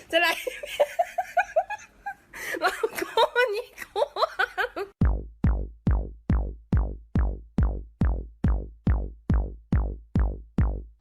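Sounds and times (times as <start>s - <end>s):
deep bass note: 5.0s - 11.0s
drum machine kick: 5.0s - 11.0s.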